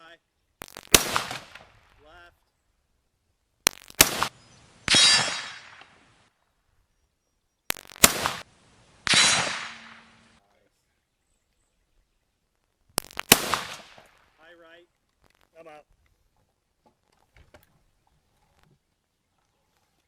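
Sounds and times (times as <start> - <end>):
rifle shots: 0.7 - 1.8, 3.7 - 6.2, 7.7 - 10.4, 13.0 - 14.2
steel target ringing: 4.9 - 5.8.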